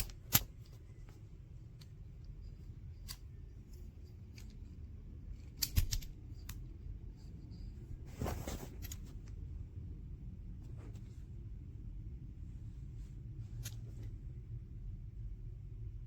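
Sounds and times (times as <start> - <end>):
sharp handling clicks: 0.0 - 0.8, 3.0 - 4.7, 5.3 - 6.7
steady low hum: 0.0 - 16.0
short rustle: 7.5 - 9.3.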